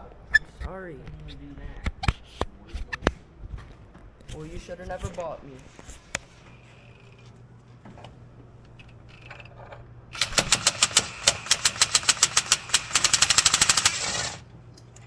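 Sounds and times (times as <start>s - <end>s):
socket ratchet clicking: 10.2s - 14.4s.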